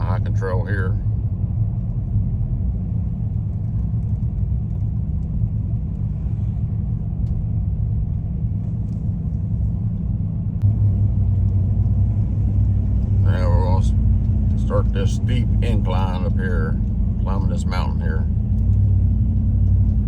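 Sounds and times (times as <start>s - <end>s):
car interior road and engine noise: 0.0s - 20.0s.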